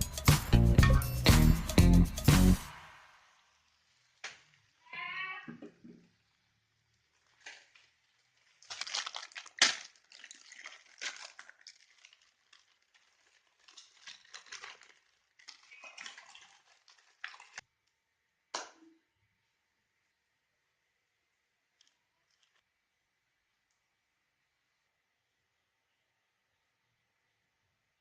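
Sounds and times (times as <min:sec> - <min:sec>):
crackling and crunching of food: 0:06.0 - 0:18.1, 0:21.6 - 0:22.8.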